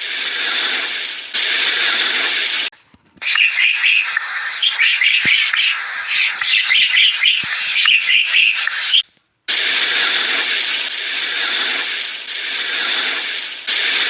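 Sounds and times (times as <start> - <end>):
high animal chirps: 3.2 - 9.0.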